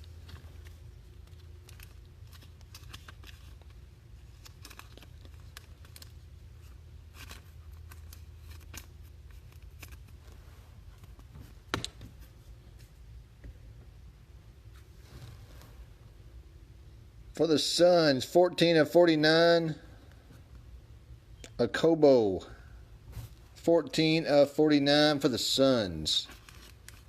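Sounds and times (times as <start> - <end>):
card wrappers rustling and crinkling: 0.0 - 11.6, 26.2 - 27.0
steady low hum: 0.0 - 27.0.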